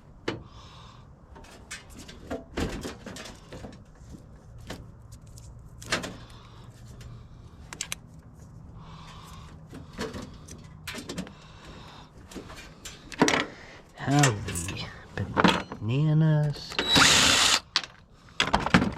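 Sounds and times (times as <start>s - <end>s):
metal parts and tools clanking: 14.1s - 16.0s.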